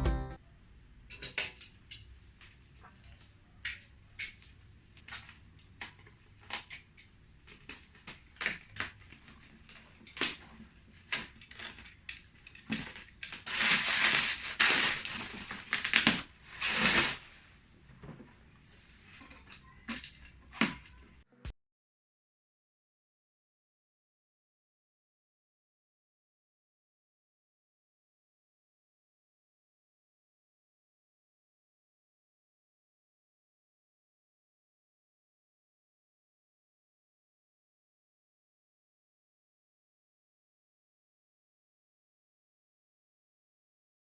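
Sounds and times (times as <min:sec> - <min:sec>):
packaging rustling and crinkling: 0:07.4 - 0:17.4.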